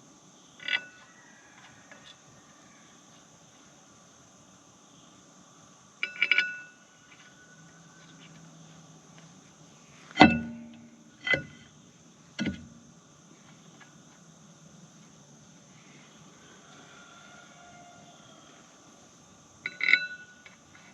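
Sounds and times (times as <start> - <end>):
light metal clinks: 6.0 - 6.8
heavy ringing metal clanks: 10.2 - 11.6.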